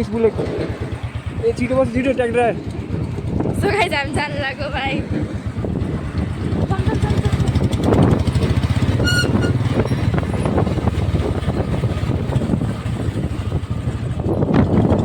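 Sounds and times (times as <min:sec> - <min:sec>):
motorcycle engine thumping: 0:00.0 - 0:15.0
short high beep: 0:09.0 - 0:10.1.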